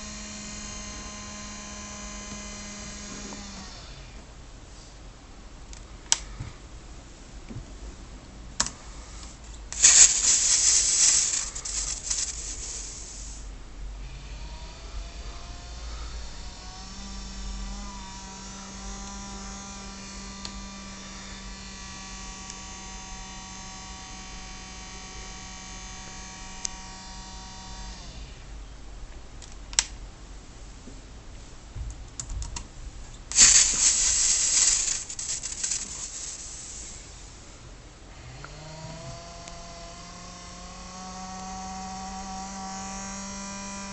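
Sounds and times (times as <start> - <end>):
loud computer fan noise: 0.0 - 4.6, 8.0 - 28.5, 32.1 - 43.9
electronic whine: 9.8 - 13.4.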